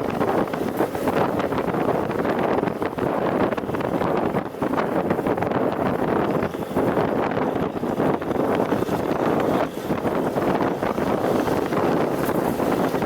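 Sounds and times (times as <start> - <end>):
truck engine running: 0.0 - 13.0
wind buffeting microphone: 0.0 - 13.0.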